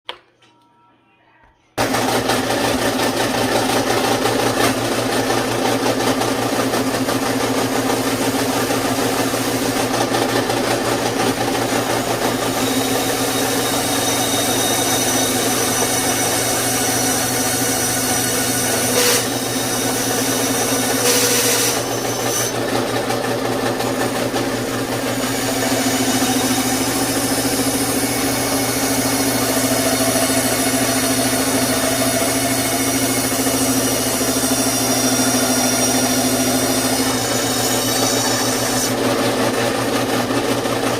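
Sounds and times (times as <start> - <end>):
power saw motor humming: 1.8 - 40.9.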